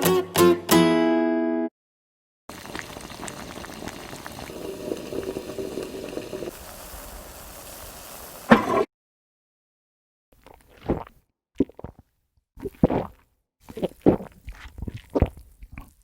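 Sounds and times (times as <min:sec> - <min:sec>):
liquid boiling and bubbling: 0:02.5 - 0:08.9, 0:10.4 - 0:12.0, 0:12.6 - 0:16.0.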